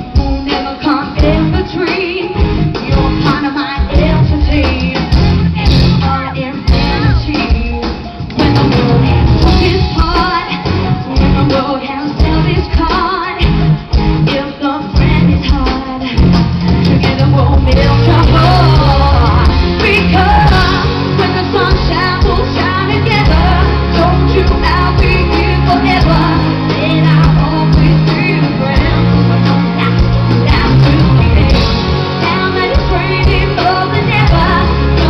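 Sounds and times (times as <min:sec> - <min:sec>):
person singing: 0:00.0 - 0:35.0
pop backing track with bass beat: 0:00.0 - 0:35.0.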